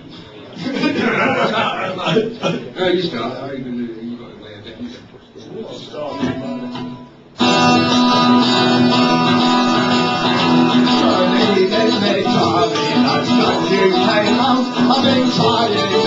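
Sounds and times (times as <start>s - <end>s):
strummed guitars: 6.1s - 16.0s
live band playing folk-punk: 6.2s - 16.0s.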